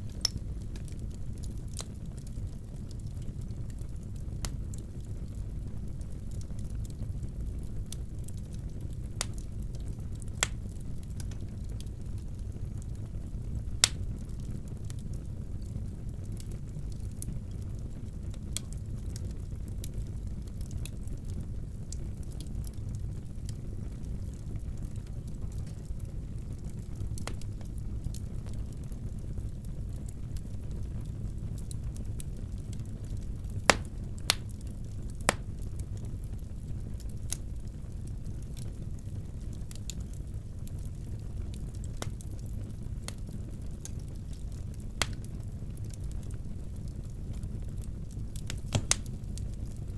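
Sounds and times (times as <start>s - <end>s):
sharp pops of fire: 0.0s - 2.0s, 9.2s - 11.9s, 13.8s - 14.2s, 26.7s - 28.3s, 33.5s - 35.8s, 41.9s - 46.3s, 47.3s - 49.7s
fire cracks and pops: 0.0s - 49.9s
fire rumbling: 0.0s - 49.9s.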